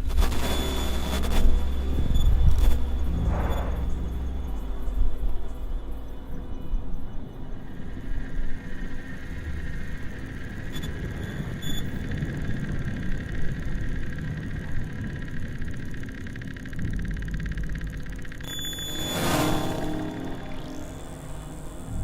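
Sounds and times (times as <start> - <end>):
low rumbling drone: 0.0 - 10.7, 12.6 - 22.0
faint sustained high tones: 0.0 - 12.1, 16.6 - 22.0.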